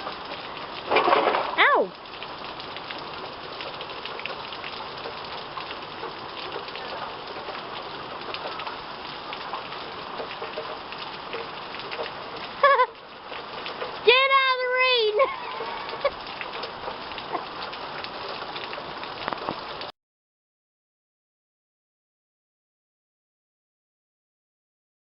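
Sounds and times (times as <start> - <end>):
heavy rain pouring: 0.0 - 19.9.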